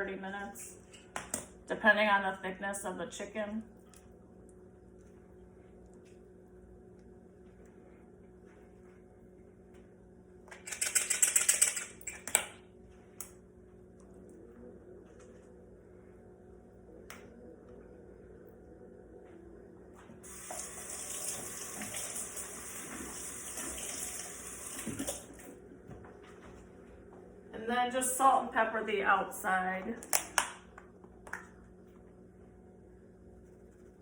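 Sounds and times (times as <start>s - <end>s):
tap water gushing: 20.2s - 25.5s
tap water running: 20.2s - 25.6s.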